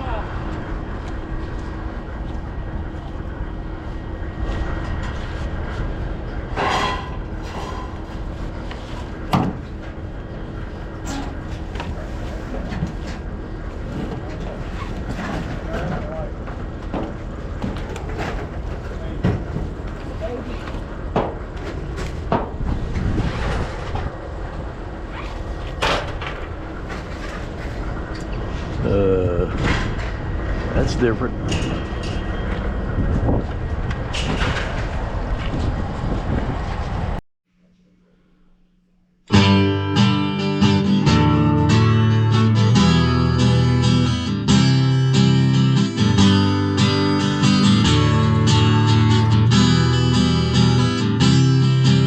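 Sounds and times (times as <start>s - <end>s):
vehicle engine low rumble: 0.0s - 37.2s.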